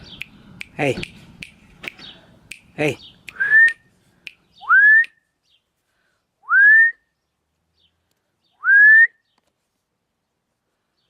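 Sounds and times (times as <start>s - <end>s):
short upward-sweeping whistles: 3.3s - 5.3s, 6.4s - 7.2s, 8.6s - 9.3s.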